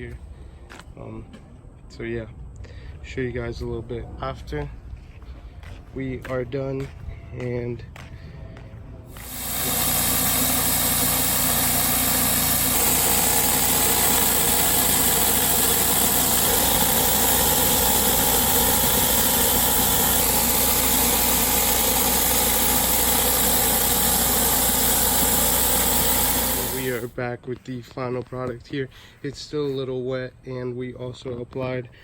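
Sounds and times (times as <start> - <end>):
pressure washer running: 9.1 - 27.1.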